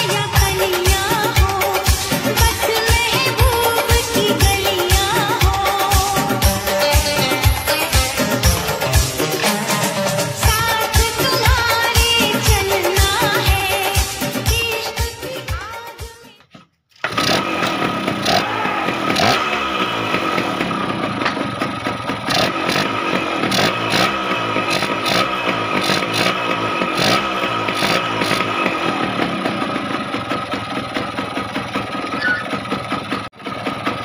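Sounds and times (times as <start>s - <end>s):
song: 0.0s - 15.0s
motorcycle engine running: 0.0s - 15.8s, 17.0s - 34.0s.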